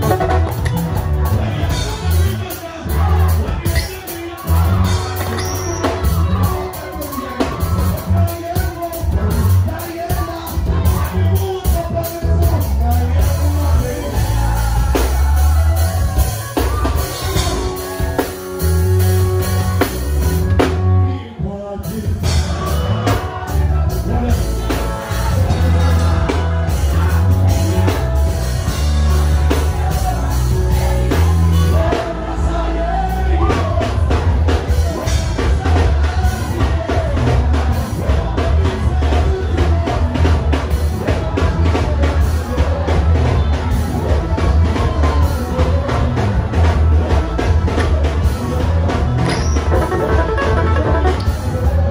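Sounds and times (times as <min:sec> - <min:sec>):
heavy bass line: 0:00.0 - 0:03.7, 0:49.1 - 0:51.9
drum kit: 0:00.0 - 0:21.1, 0:21.8 - 0:51.9
person singing: 0:49.6 - 0:51.9.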